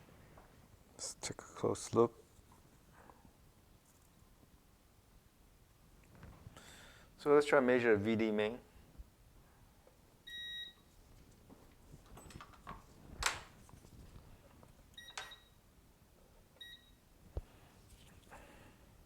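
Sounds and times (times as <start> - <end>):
multimeter beeps: 10.3 - 10.9, 15.0 - 15.6, 16.6 - 17.0.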